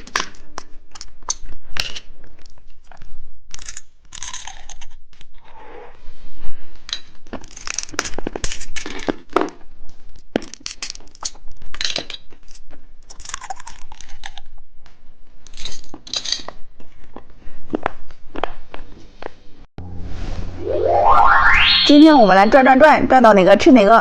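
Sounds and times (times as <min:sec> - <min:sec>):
wrappers crinkling and tearing: 0:07.3 - 0:14.5.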